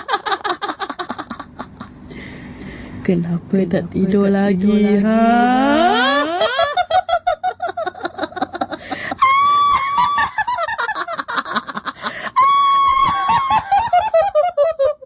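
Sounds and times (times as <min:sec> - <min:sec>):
female ghost cackling laugh: 0:00.0 - 0:02.0, 0:04.7 - 0:15.0
long high shriek: 0:12.4 - 0:13.3.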